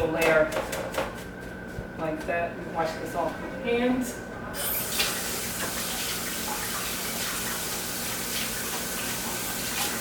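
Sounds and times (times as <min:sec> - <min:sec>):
faucet running into sink: 0:04.6 - 0:10.0.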